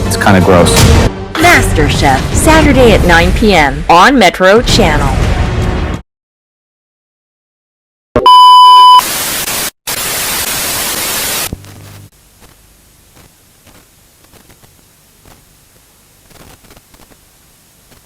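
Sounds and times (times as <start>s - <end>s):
loud steady beep: 8.2s - 9.0s
tv static hiss: 8.8s - 18.0s
quiet hiss with crackles: 9.2s - 18.0s
faint hum: 11.5s - 18.0s.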